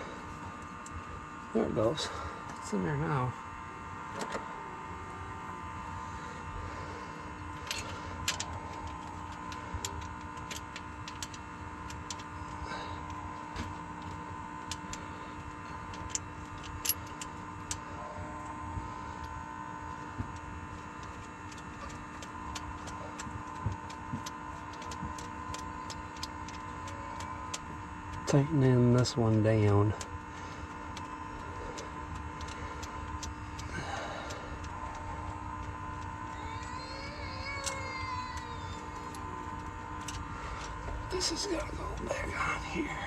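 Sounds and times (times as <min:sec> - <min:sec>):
steady hum: 0:00.0 - 0:43.0.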